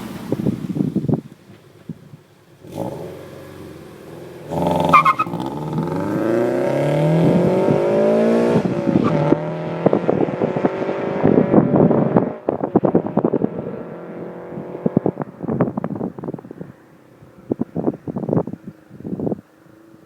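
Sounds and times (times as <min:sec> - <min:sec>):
car engine revving: 0:02.5 - 0:16.4.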